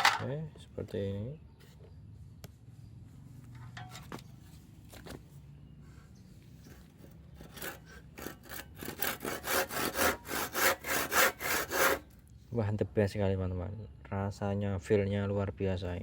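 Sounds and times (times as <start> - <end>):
light knocks and scrapes: 1.6 - 5.3
hand saw sawing wood: 7.3 - 12.1.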